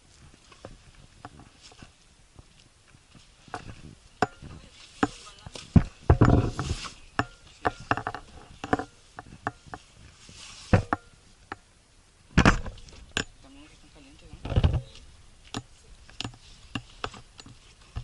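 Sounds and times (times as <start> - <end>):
footsteps on rocky ground: 0.0 - 11.0.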